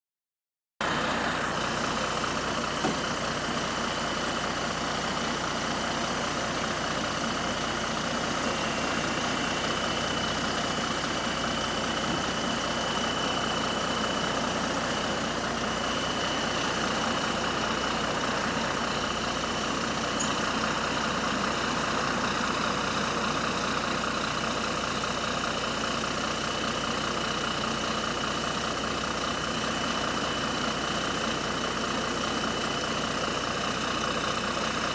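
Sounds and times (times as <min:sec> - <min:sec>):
bus engine running: 0:00.8 - 0:34.9
high-pitched exhaust leak tone: 0:07.3 - 0:24.0.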